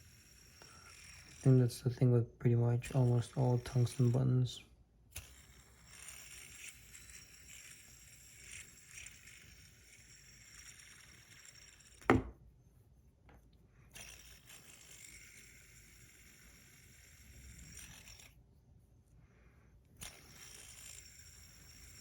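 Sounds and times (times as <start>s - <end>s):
fidget spinner whirring: 0.0s - 2.0s, 2.8s - 12.5s, 13.4s - 22.0s
sharp knock: 12.1s - 12.4s.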